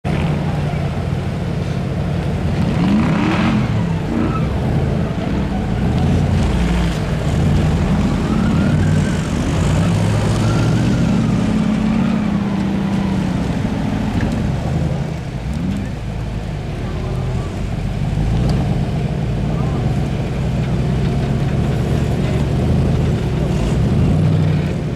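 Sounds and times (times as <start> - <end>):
off-road vehicle engine revving: 0.0 - 24.9.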